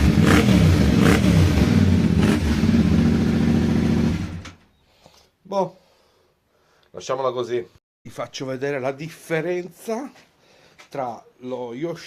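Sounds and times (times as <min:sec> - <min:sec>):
motorcycle engine revving and idling: 0:00.0 - 0:04.6.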